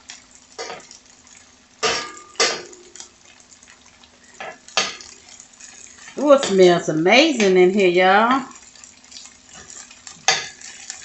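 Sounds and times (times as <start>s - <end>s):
shrimp sizzling in oil: 0.0s - 11.0s
metal utensil scraping a frying pan: 4.4s - 6.8s, 9.1s - 11.0s.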